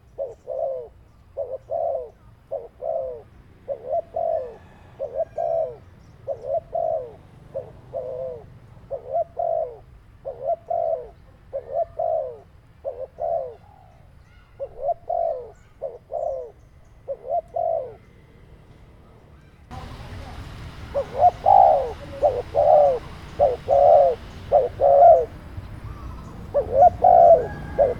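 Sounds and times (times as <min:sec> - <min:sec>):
dove cooing: 0:00.0 - 0:18.5, 0:19.7 - 0:27.9.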